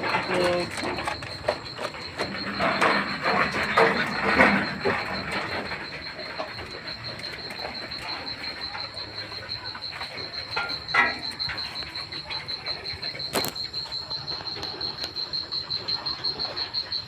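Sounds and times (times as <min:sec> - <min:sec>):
insect chirring trill: 0:00.0 - 0:17.0.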